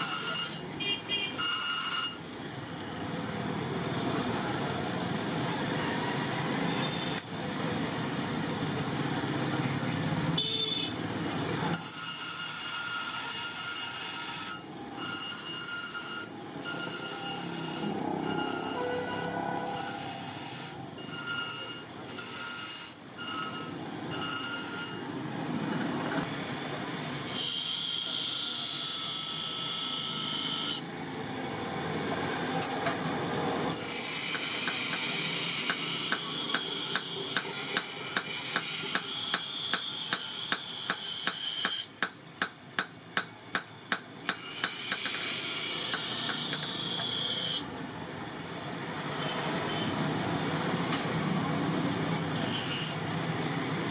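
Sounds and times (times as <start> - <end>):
filing steel: 11.8 - 25.0, 33.7 - 42.0, 44.2 - 47.7, 52.2 - 53.0.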